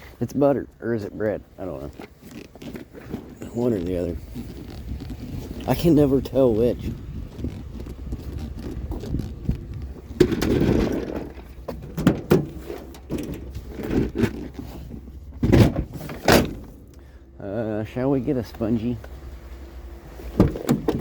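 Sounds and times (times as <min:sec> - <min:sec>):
hard objects scraping: 0:01.6 - 0:06.2, 0:06.8 - 0:16.8.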